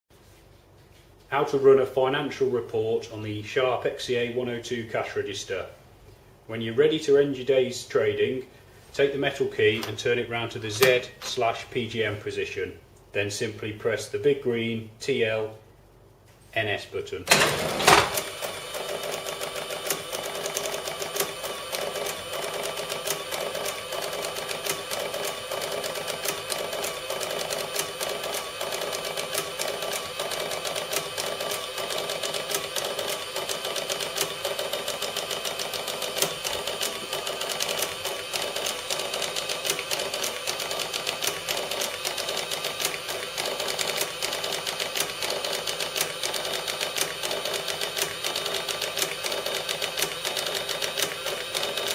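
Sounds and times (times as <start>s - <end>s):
receipt printer clicking: 17.3s - 51.9s.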